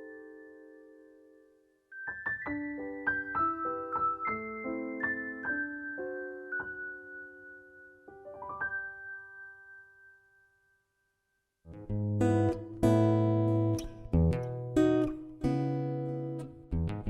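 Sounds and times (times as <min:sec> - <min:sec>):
gentle piano music: 0:00.0 - 0:10.6.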